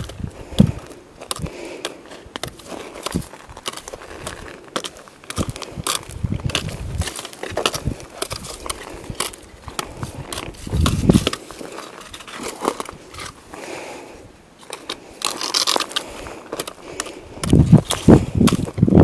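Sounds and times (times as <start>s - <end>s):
footsteps crunching through undergrowth: 2.0s - 13.6s
twigs snapping: 14.6s - 18.9s.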